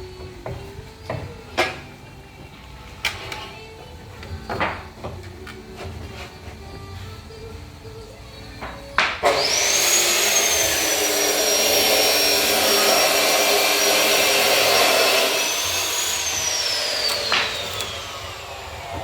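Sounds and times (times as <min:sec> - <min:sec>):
planer whining: 0:09.2 - 0:19.0.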